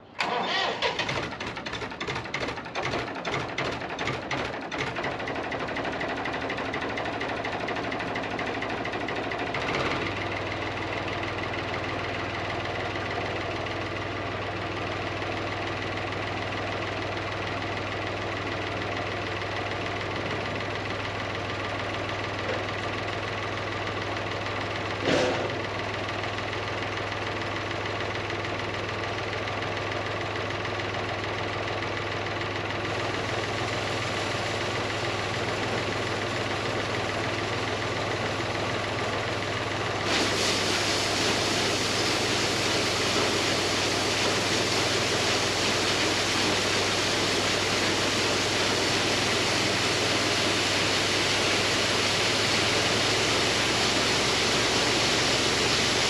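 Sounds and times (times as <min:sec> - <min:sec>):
engine clattering: 0:00.2 - 0:11.1.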